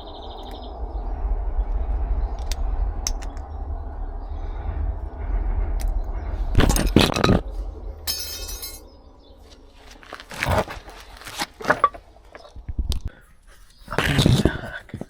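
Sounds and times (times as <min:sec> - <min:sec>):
metal tools clinking and knocking: 0:08.1 - 0:08.8, 0:11.6 - 0:12.5.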